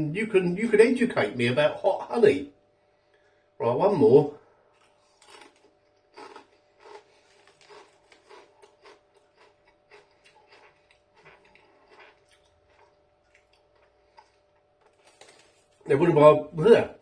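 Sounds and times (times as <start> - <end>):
chewing crunchy crisp: 4.7 - 15.9.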